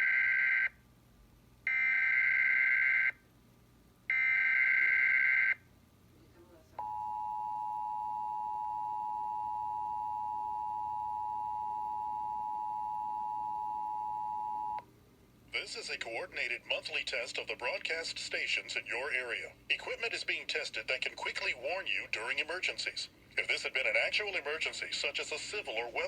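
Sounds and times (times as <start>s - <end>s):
steady two-tone attention signal: 6.8s - 14.8s.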